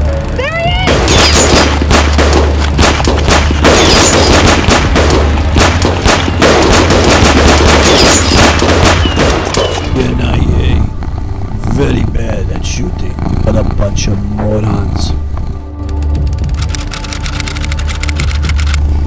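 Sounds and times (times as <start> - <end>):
steady low drone: 0.0 - 19.0
rapid gunfire: 0.9 - 9.9.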